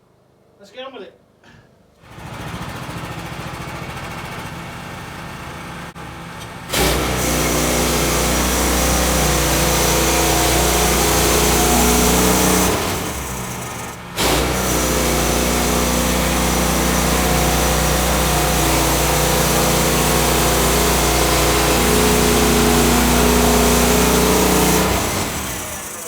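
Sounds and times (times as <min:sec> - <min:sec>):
engine running: 0:02.0 - 0:26.0.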